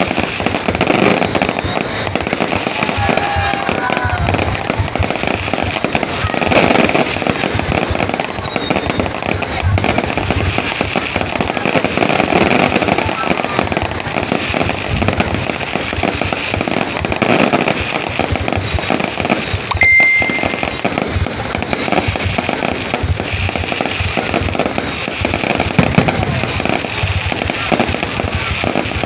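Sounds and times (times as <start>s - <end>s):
fireworks crackling and banging: 0.0s - 29.0s
steady high tone: 19.8s - 20.9s.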